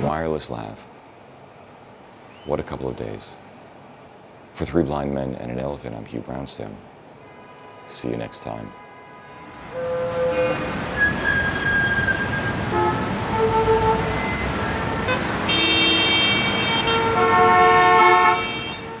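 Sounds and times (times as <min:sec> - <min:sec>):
traffic hum: 0:00.0 - 0:19.0
car horns honking: 0:08.6 - 0:19.0.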